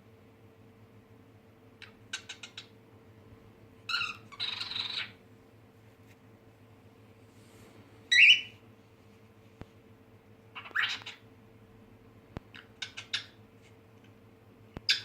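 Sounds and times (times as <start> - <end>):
cockatiel chirping: 1.8 - 2.7, 3.9 - 5.2, 8.1 - 8.5, 10.5 - 11.2, 12.5 - 13.4.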